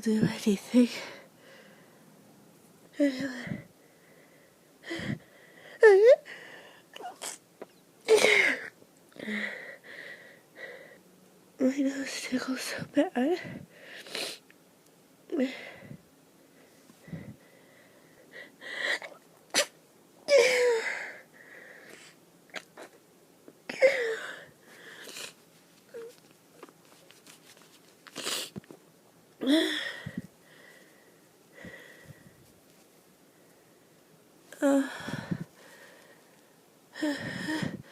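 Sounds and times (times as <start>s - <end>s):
person sneezing: 7.0s - 7.4s, 18.9s - 21.0s.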